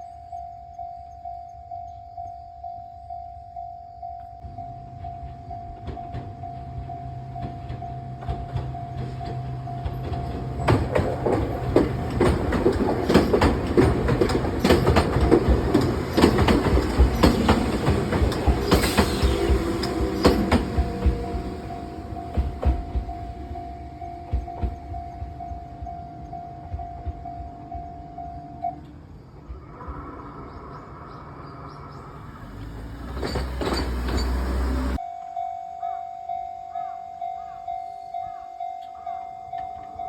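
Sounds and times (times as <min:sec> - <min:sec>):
train low hum: 0:00.0 - 0:35.0
train wheels clattering: 0:04.9 - 0:28.2, 0:32.4 - 0:35.0
level crossing bell ringing: 0:35.0 - 0:40.0.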